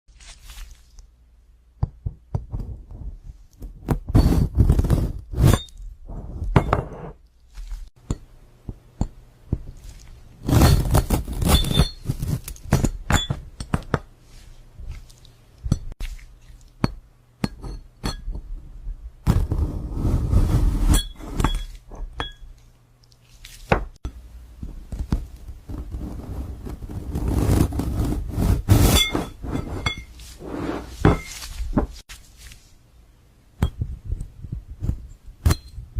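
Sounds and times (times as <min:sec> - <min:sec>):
glass clinking and cracking: 0:10.5 - 0:14.0, 0:16.8 - 0:18.4, 0:21.0 - 0:22.6
high ringing from glass hits: 0:21.0 - 0:22.5.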